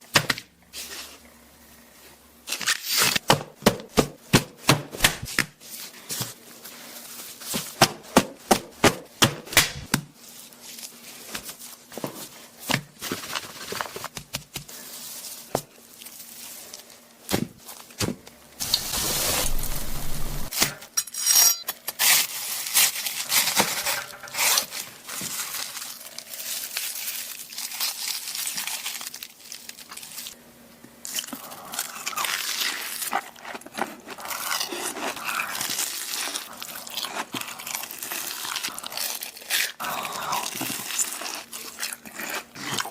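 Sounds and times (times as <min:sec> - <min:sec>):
faint appliance hum: 0:00.0 - 0:42.9
burst of hiss: 0:18.6 - 0:20.5
packaging crinkling and tearing: 0:18.6 - 0:20.6, 0:21.9 - 0:30.4, 0:31.1 - 0:42.9.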